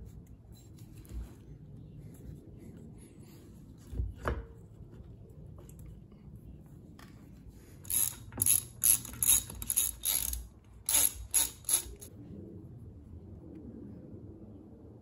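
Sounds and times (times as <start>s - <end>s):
ratchet wrench clicking: 7.8s - 12.1s.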